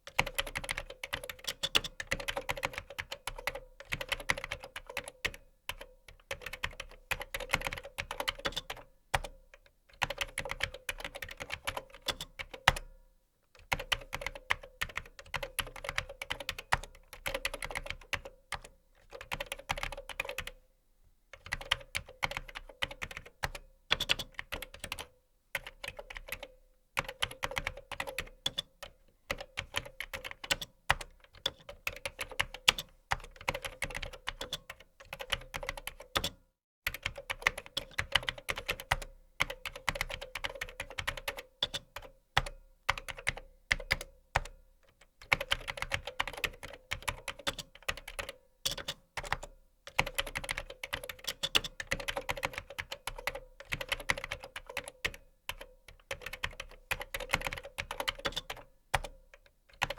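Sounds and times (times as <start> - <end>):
keyboard typing clicks: 45.2 - 59.9.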